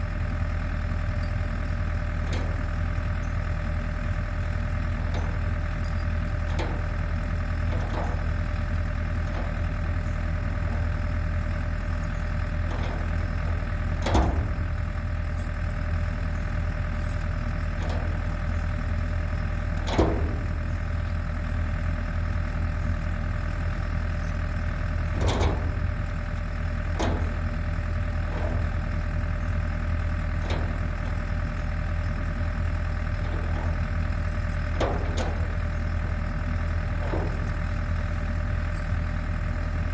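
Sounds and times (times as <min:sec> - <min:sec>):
generator engine humming: 0:00.0 - 0:39.9.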